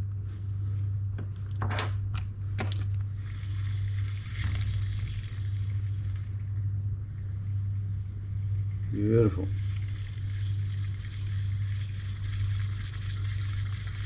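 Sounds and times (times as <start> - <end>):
steady low hum: 0.0 - 14.0
fishing reel whirring: 3.1 - 14.0.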